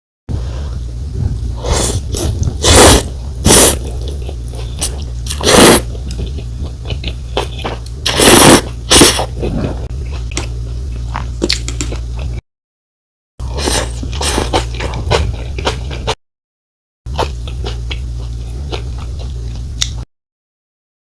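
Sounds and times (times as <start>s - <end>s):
slurping noodles: 0.3s - 11.6s, 13.4s - 16.1s
low hum: 0.3s - 12.4s, 13.4s - 16.2s, 17.1s - 20.0s
wet chewing: 1.0s - 12.4s, 13.6s - 16.2s, 17.1s - 20.0s.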